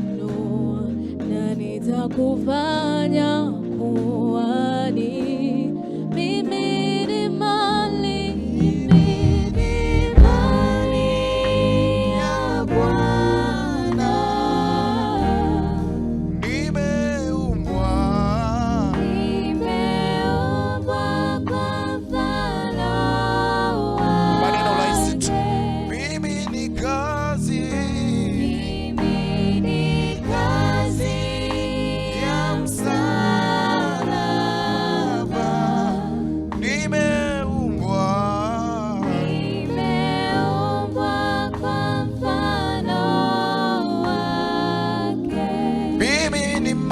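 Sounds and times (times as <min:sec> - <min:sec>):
gospel voices holding notes: 0:00.0 - 0:46.9
instrumental backing: 0:08.1 - 0:46.9
low hits: 0:08.4 - 0:12.9, 0:16.2 - 0:20.0, 0:27.7 - 0:32.2.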